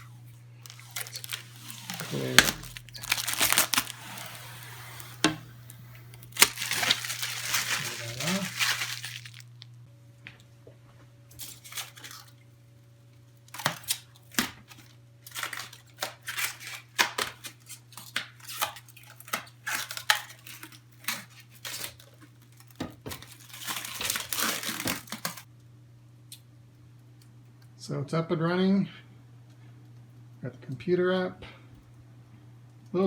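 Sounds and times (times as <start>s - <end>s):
crinkling and rustling: 0.0s - 9.8s, 13.5s - 25.5s
steady low hum: 0.0s - 11.5s.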